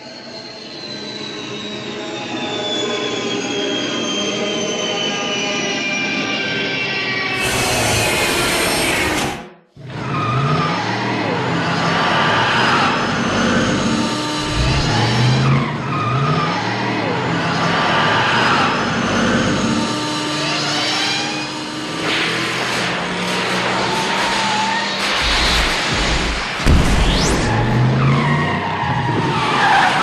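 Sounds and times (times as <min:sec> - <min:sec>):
car engine accelerating: 0:09.8 - 0:30.0
train sound effect: 0:14.1 - 0:15.9.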